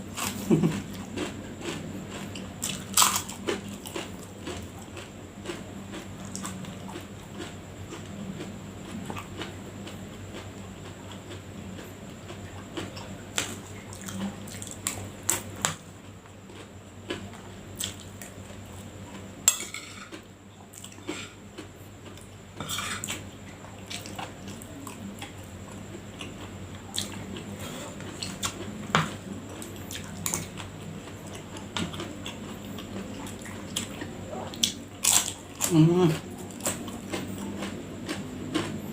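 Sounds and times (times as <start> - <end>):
spoon scraping a plate: 19.5 - 20.1, 22.6 - 23.2.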